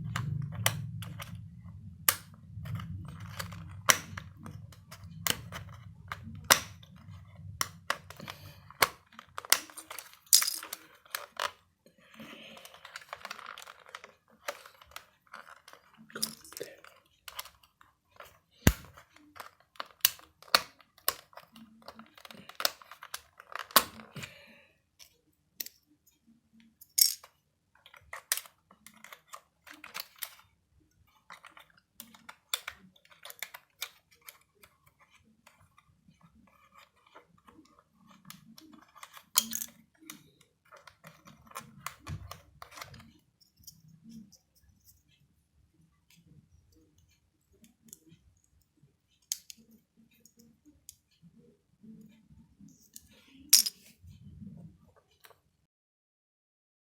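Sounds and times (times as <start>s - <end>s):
plastic keyboard clicks and clacks: 0.0s - 24.4s, 26.6s - 44.4s.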